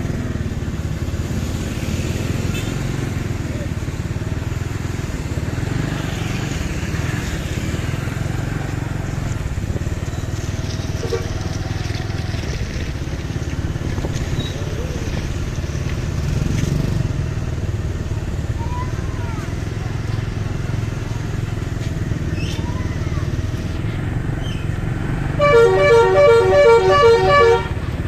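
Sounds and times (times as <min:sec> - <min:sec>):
diesel bus engine idling: 0:07.9 - 0:15.6.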